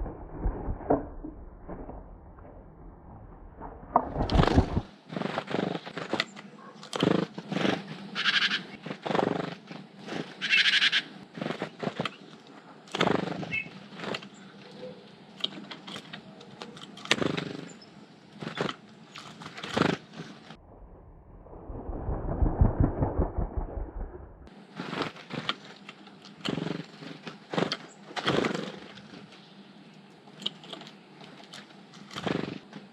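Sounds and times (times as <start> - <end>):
bird wings whirring: 3.9 - 14.9, 16.9 - 20.6, 21.3 - 29.4, 31.4 - 32.9.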